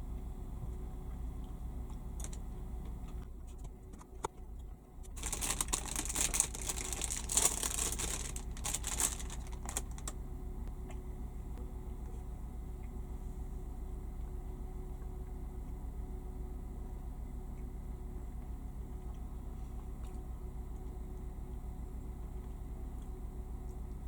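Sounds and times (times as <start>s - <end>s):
steady low hum: 0.0s - 24.0s
crinkling and clicking handling noise: 1.4s - 11.0s.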